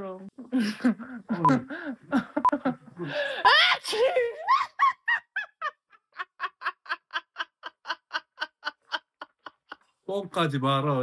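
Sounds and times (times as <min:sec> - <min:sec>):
person laughing: 0:00.6 - 0:09.8.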